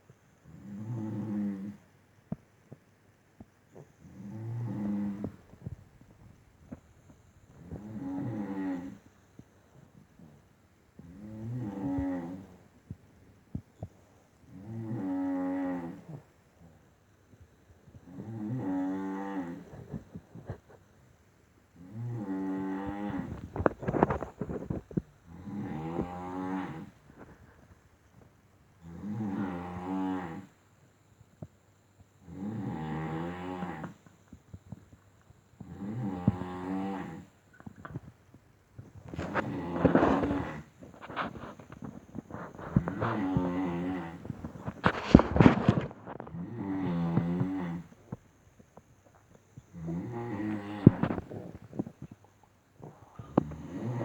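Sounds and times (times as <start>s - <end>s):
rasping snores: 0.5s - 1.8s, 4.0s - 5.8s, 7.5s - 9.1s, 11.0s - 12.6s, 14.5s - 16.2s, 18.0s - 20.6s, 21.8s - 27.4s, 28.8s - 30.6s, 32.2s - 34.0s, 35.6s - 38.1s, 39.0s - 48.2s, 49.7s - 52.0s, 52.8s - 54.0s.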